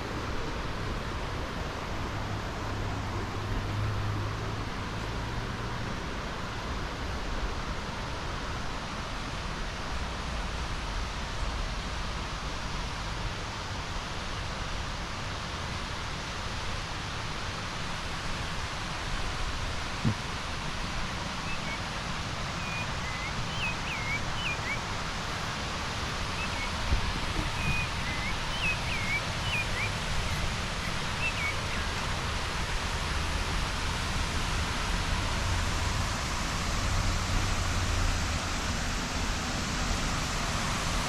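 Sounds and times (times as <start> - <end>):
waterfall rushing: 17.4 - 41.0.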